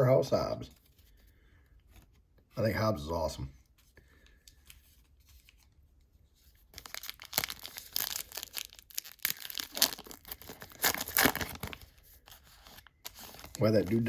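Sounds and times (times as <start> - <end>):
wrapper tearing and crinkling: 6.7 - 14.0.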